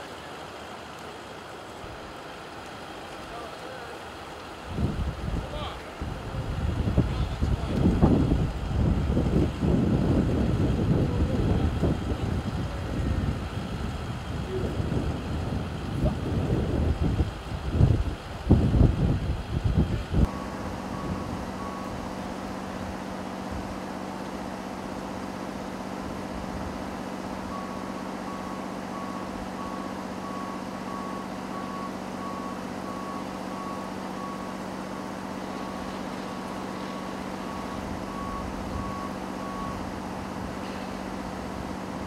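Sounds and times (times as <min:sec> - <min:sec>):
large engine humming: 0:00.0 - 0:42.0
vehicle backup alarm beeping: 0:20.2 - 0:23.4, 0:27.4 - 0:41.2.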